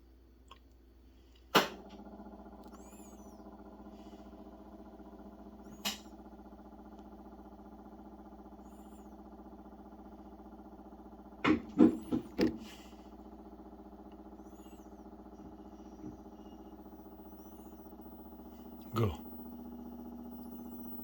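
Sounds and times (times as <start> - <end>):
washing machine motor hum: 0.0 - 21.0.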